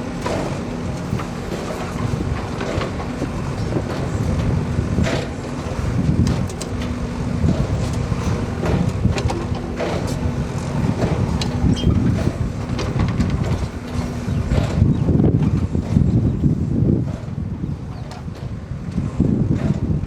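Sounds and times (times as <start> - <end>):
knocks and clanks: 0.2 - 16.1.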